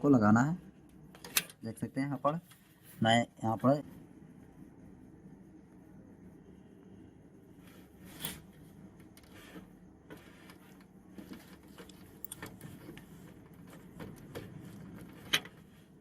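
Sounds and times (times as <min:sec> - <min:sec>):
handling noise: 0:09.3 - 0:15.7.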